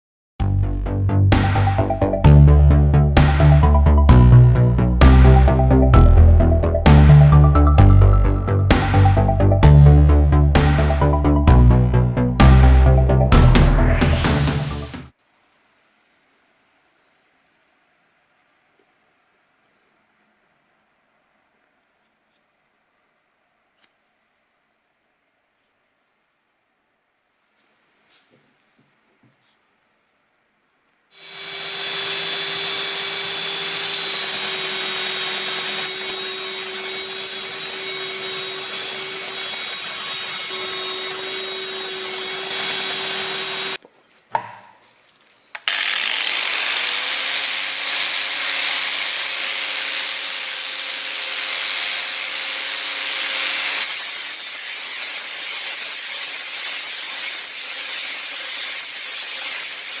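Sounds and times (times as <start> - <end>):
electric power tool motor hum: 31.2 - 43.8, 45.6 - 59.9.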